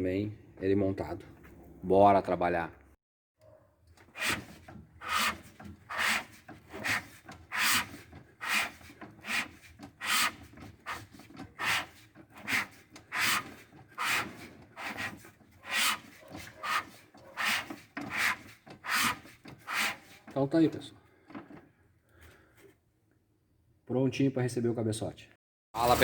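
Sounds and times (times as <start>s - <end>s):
hand tool rasping strokes: 4.0s - 20.4s.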